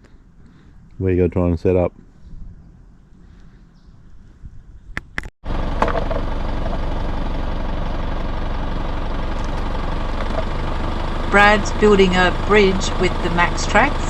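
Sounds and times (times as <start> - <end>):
vehicle engine idling: 5.4 - 14.0.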